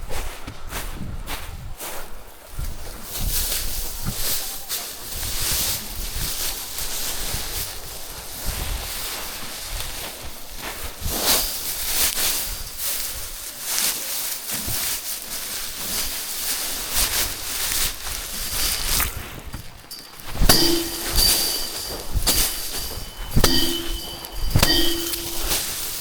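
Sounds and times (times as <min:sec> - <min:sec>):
rice stalks beaten by hand: 0:03.1 - 0:26.0
metallic clang: 0:19.8 - 0:26.0.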